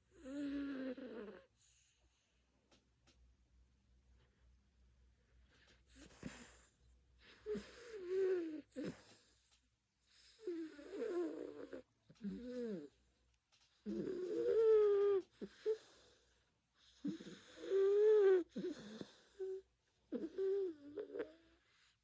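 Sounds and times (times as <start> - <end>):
cat snoring: 0.1 - 1.8, 5.9 - 6.8, 7.4 - 9.2, 10.1 - 13.0, 13.8 - 21.9.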